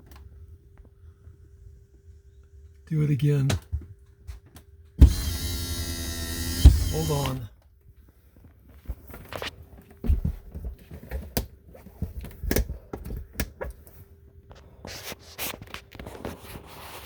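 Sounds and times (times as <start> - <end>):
faint motor hum: 3.9 - 14.9.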